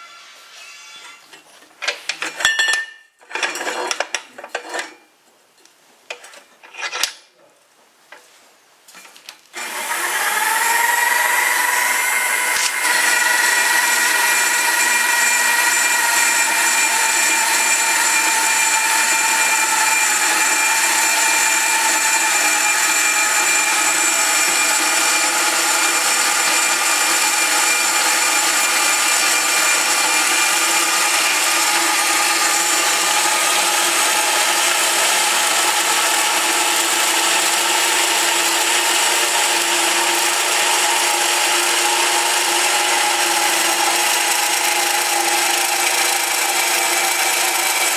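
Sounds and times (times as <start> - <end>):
band saw cutting: 9.6 - 47.9.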